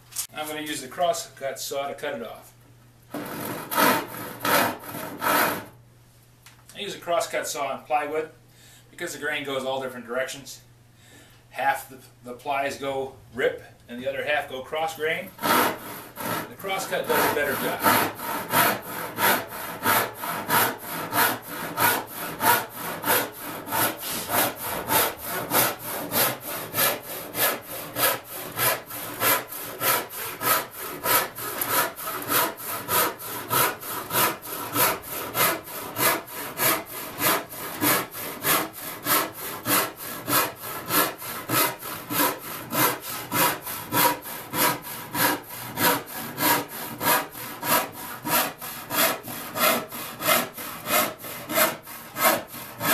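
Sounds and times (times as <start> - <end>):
hand saw cutting plywood: 3.1 - 5.8, 15.3 - 52.9.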